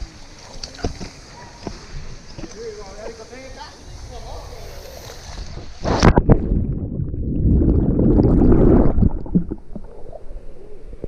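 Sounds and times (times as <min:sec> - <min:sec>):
water splashing and churning: 0:05.1 - 0:11.0.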